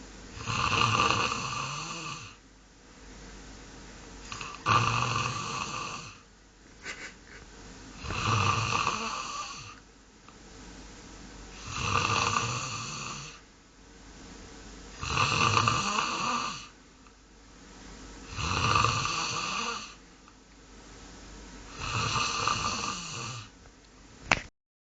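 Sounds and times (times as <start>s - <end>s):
goose snoring: 0.4s - 2.4s, 4.3s - 6.2s, 11.6s - 13.4s, 15.0s - 16.7s, 18.3s - 20.0s, 21.7s - 23.5s
sharp click: 24.3s - 24.5s.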